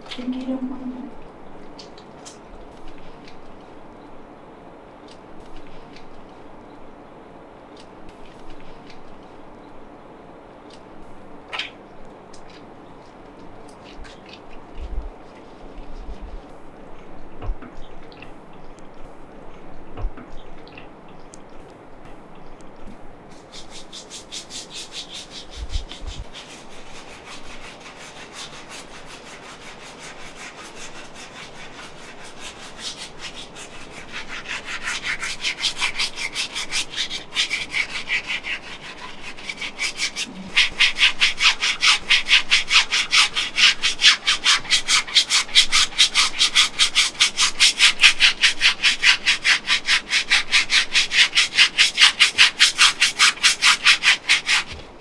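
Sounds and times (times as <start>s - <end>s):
hands rubbing on back: 23.3s - 54.9s.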